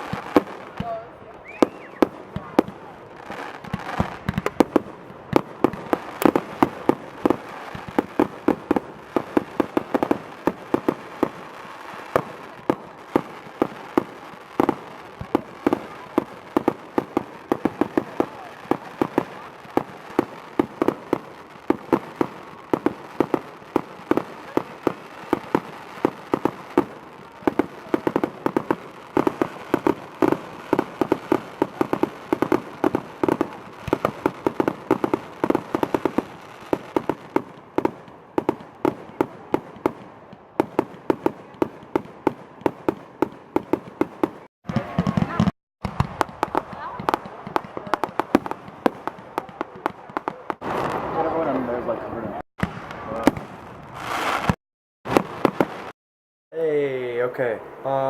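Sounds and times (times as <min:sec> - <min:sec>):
fireworks bangs and pops: 0:00.0 - 0:51.9, 0:52.6 - 0:56.0
firework rising whistle: 0:01.4 - 0:02.1.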